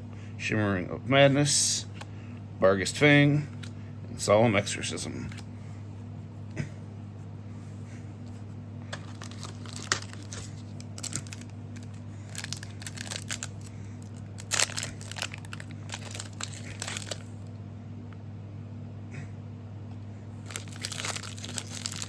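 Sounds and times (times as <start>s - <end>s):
low electrical hum: 0.0s - 22.0s
foil wrapper crinkling and tearing: 9.0s - 17.5s, 20.4s - 22.0s.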